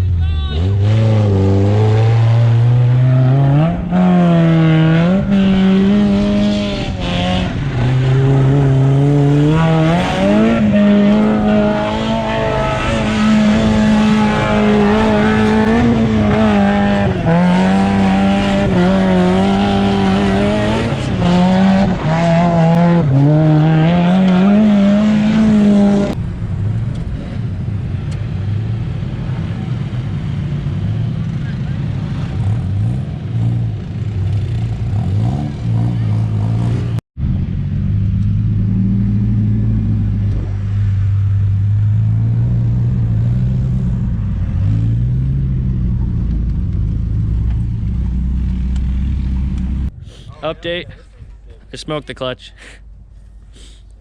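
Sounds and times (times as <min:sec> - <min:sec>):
kart engine revving: 0:00.6 - 0:26.2.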